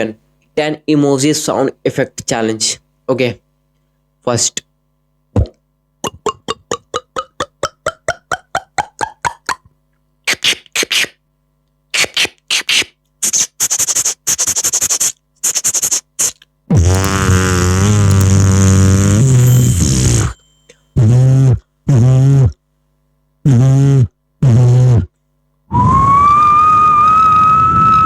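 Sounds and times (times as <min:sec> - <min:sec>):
beatboxing mouth clicks: 0:05.3 - 0:11.2, 0:11.9 - 0:19.4, 0:21.0 - 0:22.6, 0:23.4 - 0:25.2
buzzing vocal tone: 0:12.0 - 0:20.4, 0:21.0 - 0:22.6, 0:23.4 - 0:25.2.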